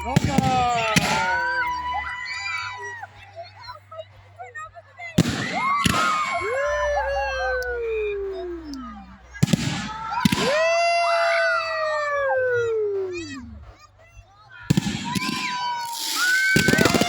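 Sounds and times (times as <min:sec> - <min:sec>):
fireworks bangs: 0:00.0 - 0:02.0, 0:05.2 - 0:06.7, 0:09.3 - 0:10.9, 0:14.7 - 0:17.0
dogs howling: 0:15.2 - 0:17.0.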